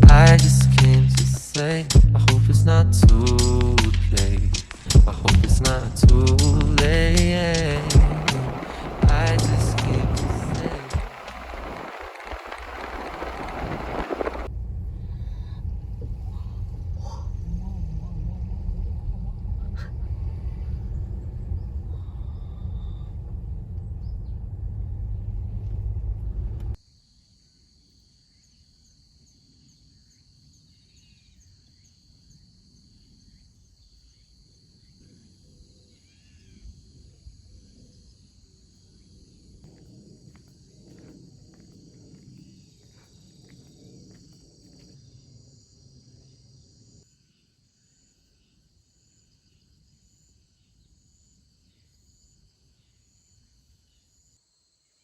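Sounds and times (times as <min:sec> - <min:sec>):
low rumble: 0:00.0 - 0:01.4, 0:02.0 - 0:26.8
insects trilling: 0:04.6 - 0:14.5, 0:26.8 - 0:55.0.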